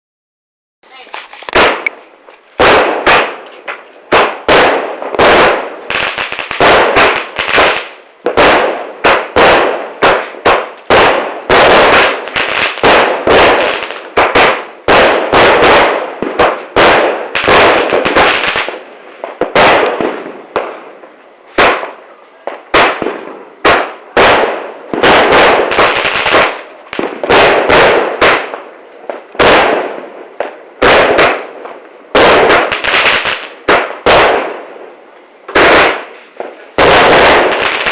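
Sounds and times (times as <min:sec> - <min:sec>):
fireworks bangs echoing: 0:00.8 - 0:37.9.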